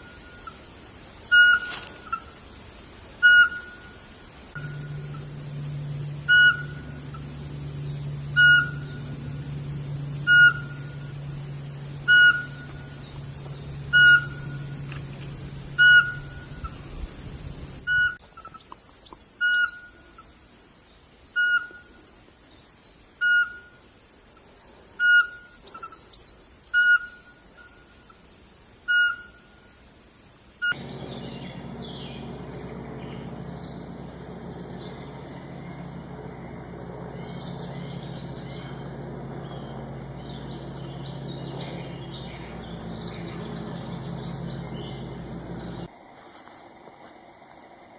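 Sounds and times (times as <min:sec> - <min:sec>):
twittering birdsong: 0:00.0 - 0:23.8, 0:24.4 - 0:29.7, 0:30.6 - 0:45.9
bird whistling short note: 0:01.3 - 0:01.7
many small birds chirping: 0:04.5 - 0:17.8, 0:30.7 - 0:45.9.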